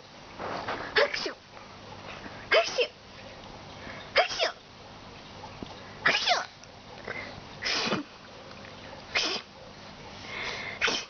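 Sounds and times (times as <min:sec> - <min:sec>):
person sneezing: 0:07.6 - 0:08.1, 0:09.2 - 0:09.5, 0:10.8 - 0:11.0.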